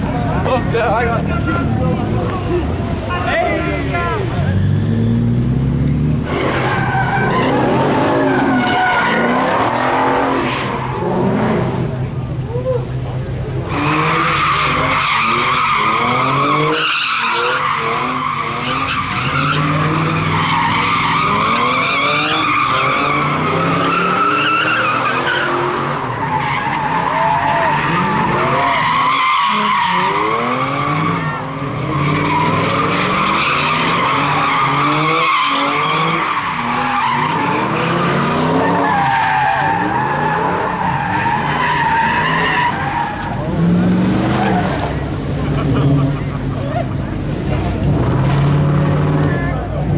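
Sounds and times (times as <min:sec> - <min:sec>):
tyres squealing: 0:13.7 - 0:45.1.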